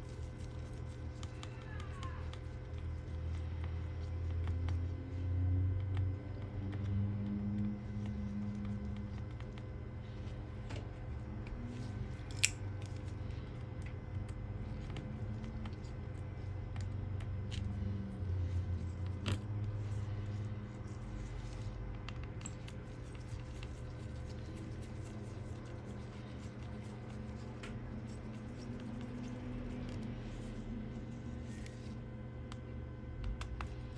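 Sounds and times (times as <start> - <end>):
steady low hum: 0.0 - 33.9
sharp click: 12.3 - 12.6.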